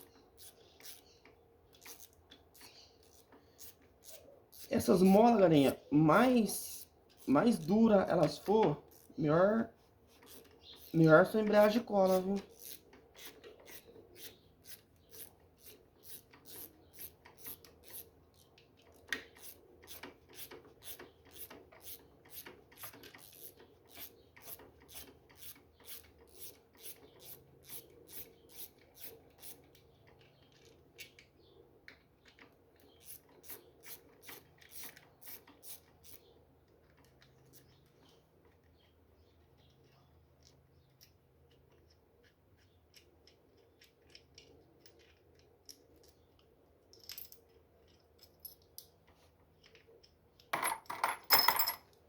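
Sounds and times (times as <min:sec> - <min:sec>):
ratchet wrench clicking: 0:00.0 - 0:05.7, 0:06.6 - 0:07.7, 0:08.8 - 0:09.2, 0:10.2 - 0:29.7, 0:33.0 - 0:36.2.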